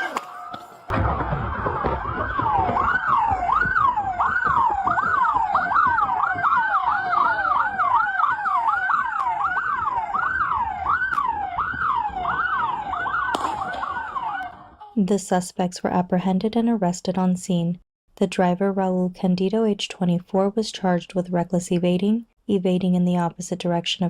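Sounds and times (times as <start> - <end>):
police siren wailing: 0.0 - 14.9.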